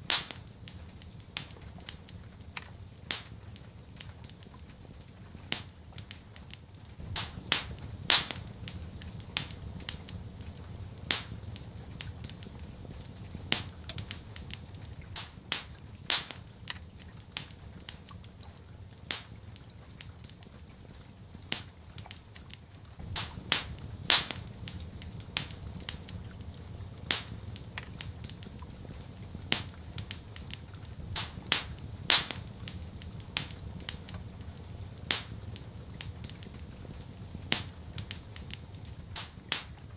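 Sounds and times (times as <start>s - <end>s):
wood fire crackling: 0.0s - 39.9s
steady low rumble: 6.9s - 19.5s, 22.8s - 39.6s.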